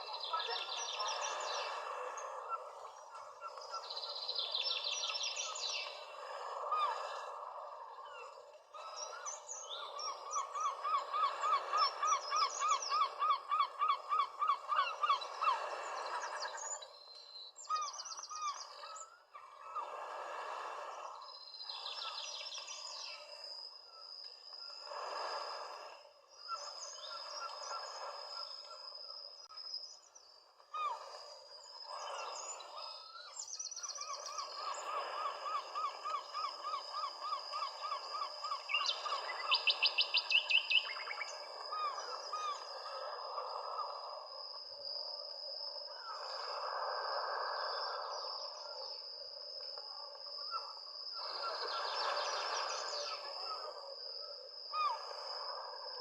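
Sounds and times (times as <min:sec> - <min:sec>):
birds calling and singing: 0:00.0 - 0:19.8, 0:31.6 - 0:42.7.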